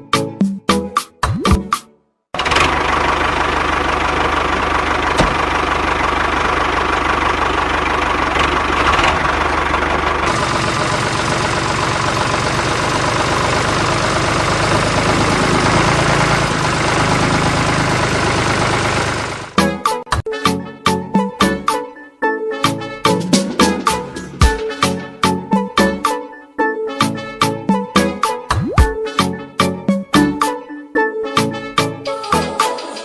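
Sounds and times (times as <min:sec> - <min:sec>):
heavy vehicle engine idling: 0:02.4 - 0:19.6.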